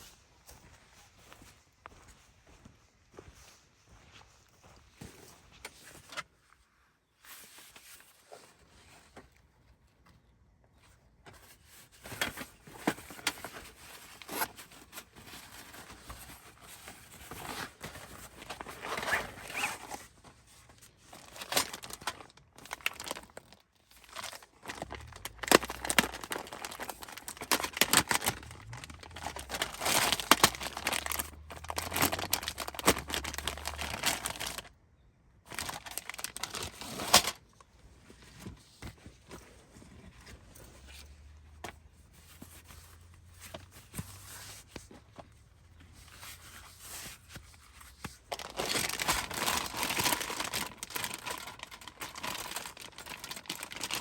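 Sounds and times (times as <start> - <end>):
crinkling and rustling: 4.7 - 6.6, 7.2 - 34.8, 35.4 - 54.0
clicks and crackles: 21.4 - 34.7.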